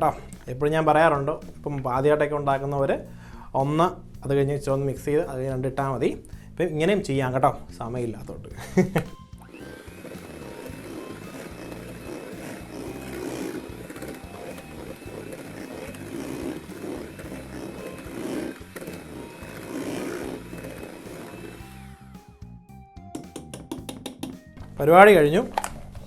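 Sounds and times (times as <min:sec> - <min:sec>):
beaters churning batter: 0:09.4 - 0:21.9
electric mixer motor whine: 0:09.4 - 0:22.3.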